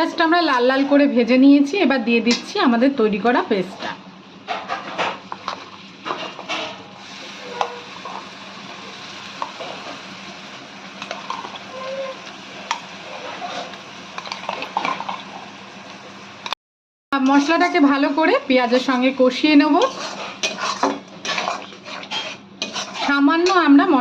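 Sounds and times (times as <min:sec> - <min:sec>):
spatula scraping pan: 0:06.0 - 0:08.2, 0:13.0 - 0:13.8, 0:17.2 - 0:18.0, 0:18.6 - 0:23.8
paste sizzling in hot oil: 0:17.2 - 0:23.3.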